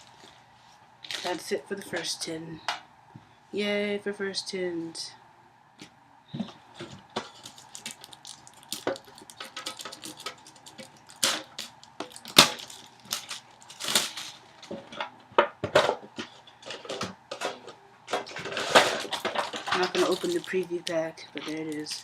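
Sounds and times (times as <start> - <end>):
foil packs crinkling: 7.2 - 14.7, 18.2 - 22.0.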